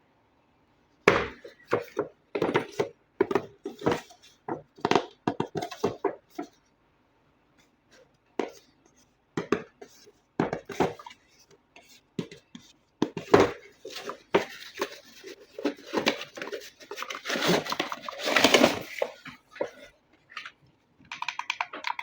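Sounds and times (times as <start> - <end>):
toy and packaging taps and clicks: 21.0 - 22.0.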